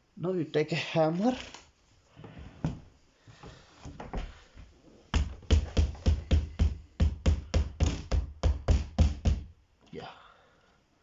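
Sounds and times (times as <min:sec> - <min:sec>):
hammer tapping a nail: 0:05.2 - 0:09.5.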